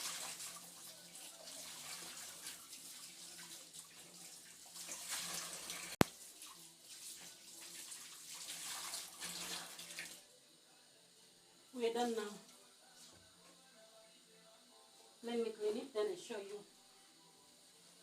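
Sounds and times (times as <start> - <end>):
water running from a tap: 0.0 - 10.2
water splashing in a sink: 0.0 - 10.2.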